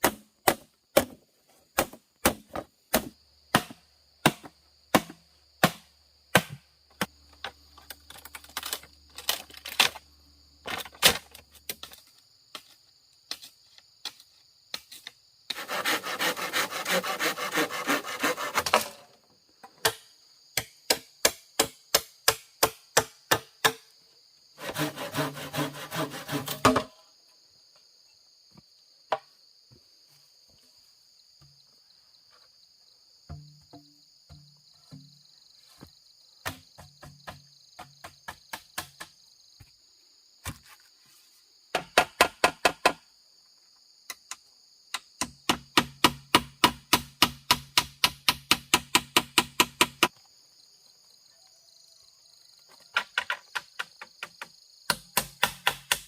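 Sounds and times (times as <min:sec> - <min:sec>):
blade chopping wood: 0:00.0 - 0:07.2, 0:24.6 - 0:27.0, 0:53.0 - 0:56.0
insects buzzing: 0:00.0 - 0:47.4
rasping strokes on wood: 0:15.5 - 0:18.7, 0:24.6 - 0:26.6.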